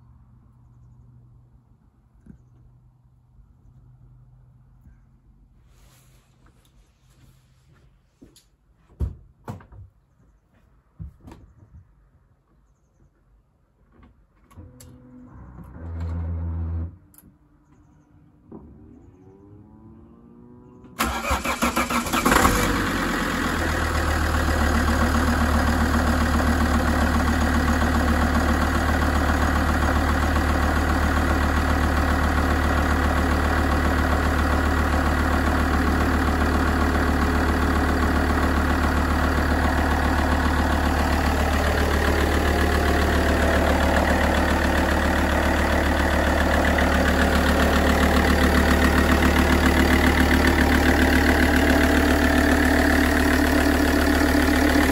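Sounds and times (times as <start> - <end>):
starter motor cranking: 21.0 - 23.0
diesel engine idling: 21.0 - 54.9.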